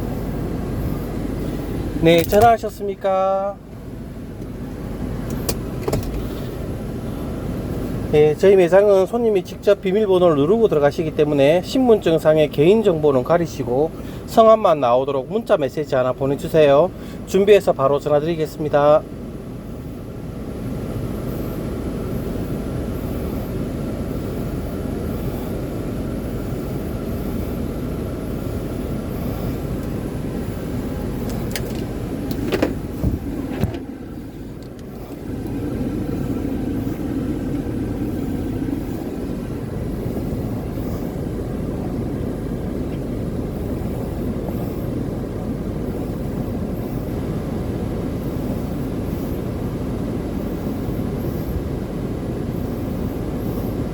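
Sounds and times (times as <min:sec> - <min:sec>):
vehicle rumble: 0:00.0 - 0:53.9
sharp clicks: 0:02.1 - 0:02.6.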